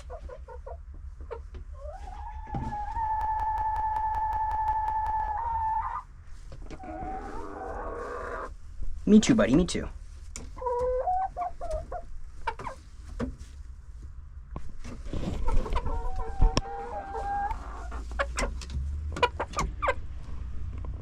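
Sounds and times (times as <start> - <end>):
chickens clucking: 0.0 - 8.6, 9.5 - 13.8, 14.7 - 20.4
drawn-out chicken call: 1.8 - 6.1, 6.7 - 8.5, 15.4 - 18.4.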